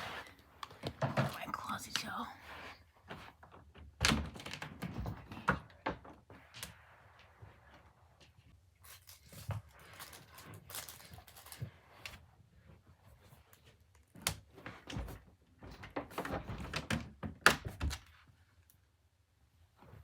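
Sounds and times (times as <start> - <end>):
rummaging through belongings: 8.8 - 12.1.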